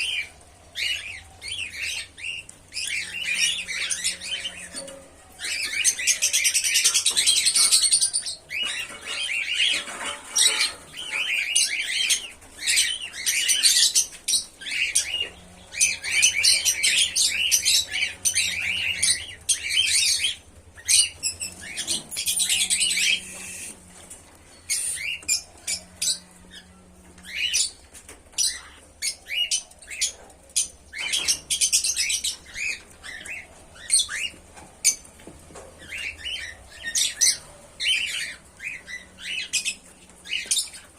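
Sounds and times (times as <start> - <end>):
cockatiels chirping: 24.7 - 35.0, 35.8 - 40.9.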